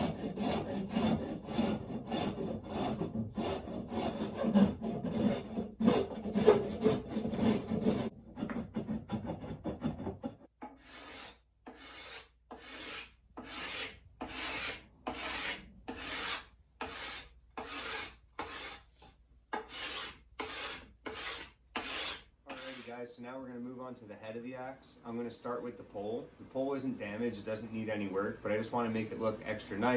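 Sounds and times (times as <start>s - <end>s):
hand file rasping on wood: 0.0s - 22.9s.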